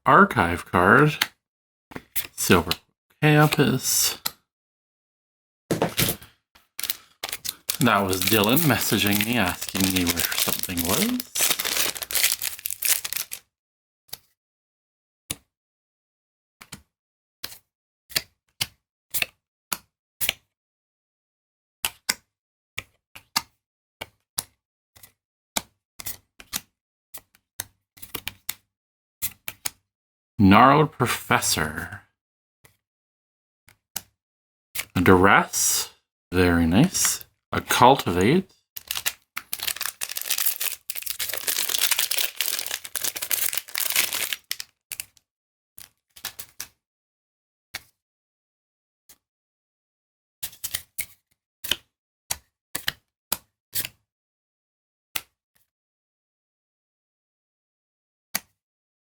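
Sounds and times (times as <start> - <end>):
trading cards clicking and snapping: 6.8 - 13.4, 38.9 - 45.1
wrapper crinkling rustle: 6.8 - 13.4, 38.8 - 44.7.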